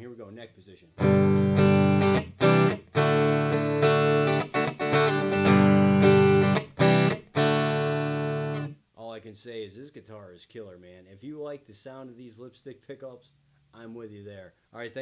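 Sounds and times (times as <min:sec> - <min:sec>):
clean electric guitar chords strummed: 0:01.0 - 0:08.8.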